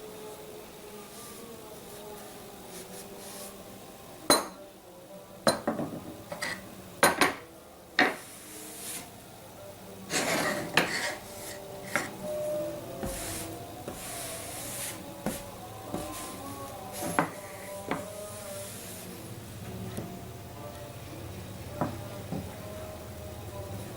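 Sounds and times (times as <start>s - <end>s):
utensils and dishes clinking: 5.5s - 8.2s, 10.1s - 12.2s
utensil scraping: 10.1s - 12.2s, 13.0s - 19.2s.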